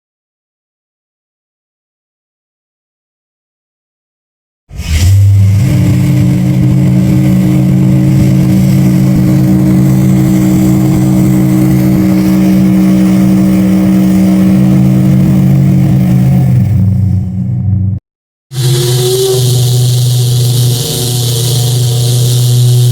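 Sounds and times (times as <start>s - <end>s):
ship whistle blast: 18.5s - 22.9s.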